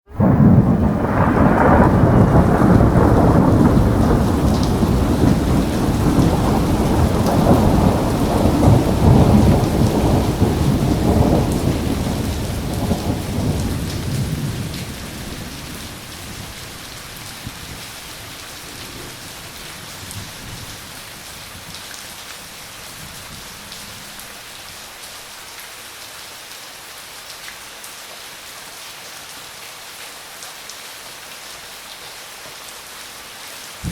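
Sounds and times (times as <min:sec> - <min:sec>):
thunder rumbling: 0:00.1 - 0:21.8
steady rain: 0:00.1 - 0:33.9.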